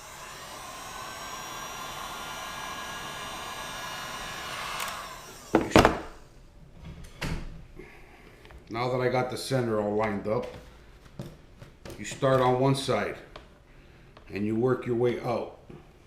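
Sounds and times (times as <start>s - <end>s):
hot-air blower whining: 0.0s - 6.4s.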